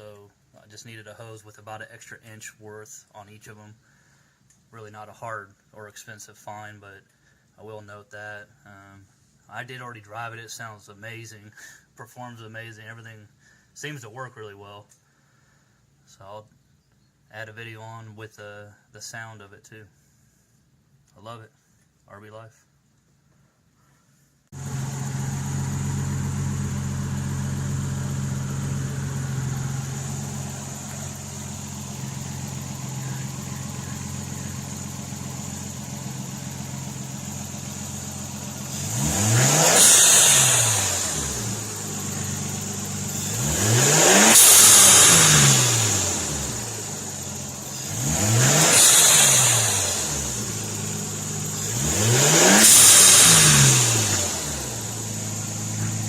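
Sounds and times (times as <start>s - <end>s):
car engine idling and revving: 24.6s - 56.0s
blow-off valve hissing: 28.4s - 56.0s.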